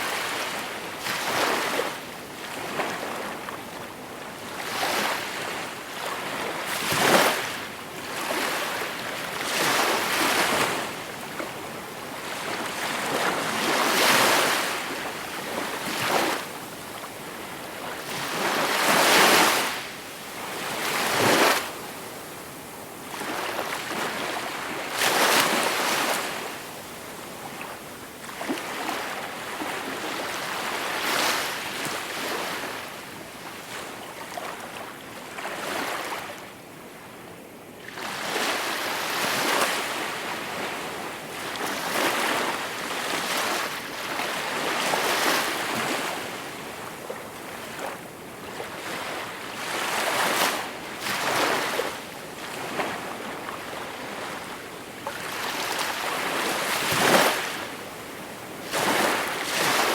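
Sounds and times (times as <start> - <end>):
ocean waves breaking on shore: 37.8 - 59.9.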